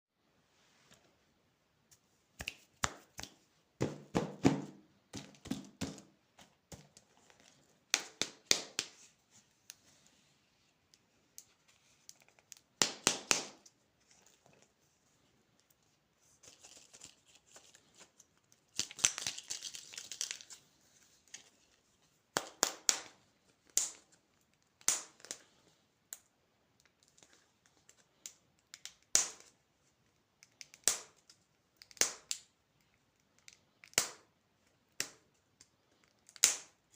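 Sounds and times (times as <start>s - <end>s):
plastic wrappers crinkling and tearing: 16.3s - 21.8s
sharp clicks and snaps: 30.4s - 34.3s.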